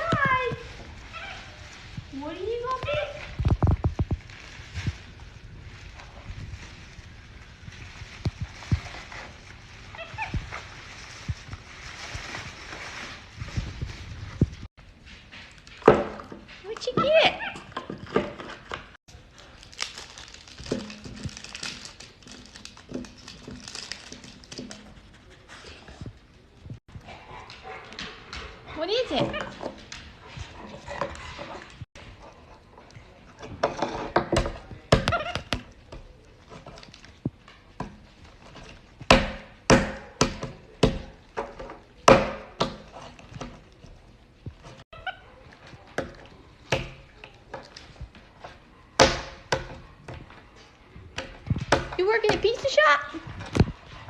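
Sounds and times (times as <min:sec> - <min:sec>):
packaging crinkling: 0:19.2 - 0:24.9.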